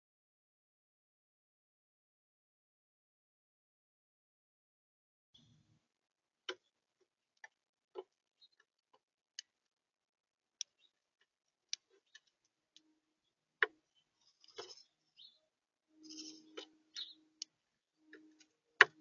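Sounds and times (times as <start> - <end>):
birds pecking seed: 10.5 - 15.4, 16.0 - 19.0
scratchy flurry: 14.2 - 15.3, 16.0 - 17.1.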